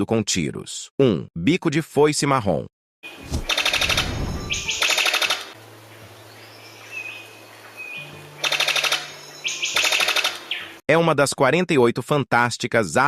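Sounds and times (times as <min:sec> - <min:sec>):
bird rapid clicking calls: 0:03.4 - 0:05.5, 0:08.4 - 0:10.7.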